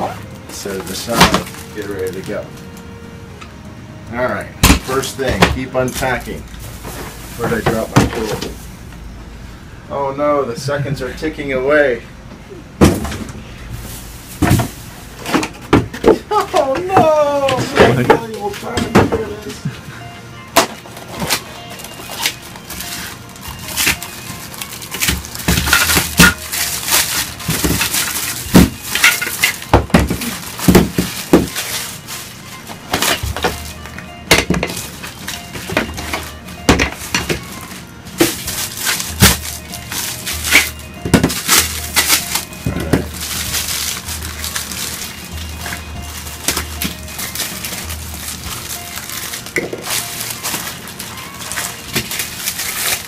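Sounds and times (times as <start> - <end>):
packaging rustling: 0.0 - 3.0, 4.8 - 8.9, 13.0 - 19.6, 20.8 - 53.0
knocks and clatters of parts: 0.5 - 1.7, 24.9 - 31.9, 32.9 - 37.6, 38.2 - 44.0.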